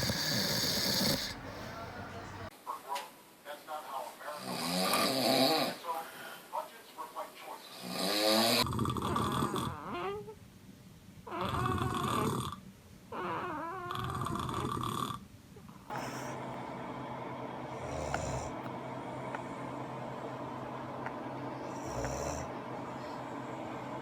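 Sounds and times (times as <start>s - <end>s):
man snoring: 0.0s - 2.2s, 4.4s - 5.8s, 7.8s - 10.1s, 11.3s - 12.6s, 13.2s - 15.2s, 15.9s - 16.6s, 17.7s - 18.7s, 21.6s - 23.8s
steady low hum: 0.0s - 2.5s, 15.8s - 24.0s.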